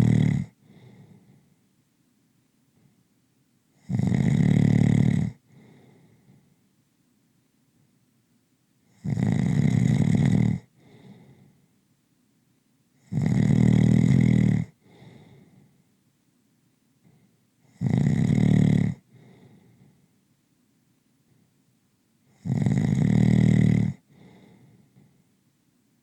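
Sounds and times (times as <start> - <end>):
loud snoring: 0.0 - 0.8, 3.8 - 5.4, 8.9 - 11.0, 13.0 - 15.0, 17.7 - 19.4, 22.3 - 24.5
faint breath: 0.0 - 1.7, 2.7 - 3.1, 5.4 - 6.7, 10.7 - 11.8, 14.8 - 16.0, 17.0 - 17.5, 19.0 - 20.2, 21.2 - 21.6, 24.0 - 25.4.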